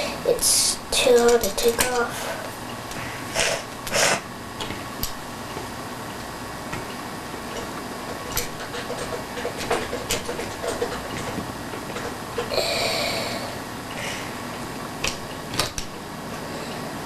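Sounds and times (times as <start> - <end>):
short hissing scrape: 3.0 - 4.2
toilet tank parts clicking: 6.7 - 12.5.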